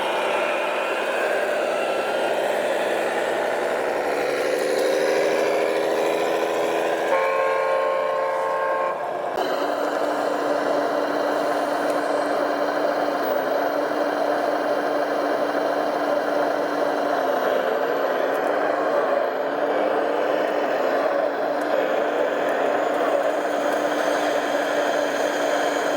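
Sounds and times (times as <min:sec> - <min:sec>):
engine drone: 0:00.0 - 0:25.9
horn sounding: 0:07.1 - 0:09.4.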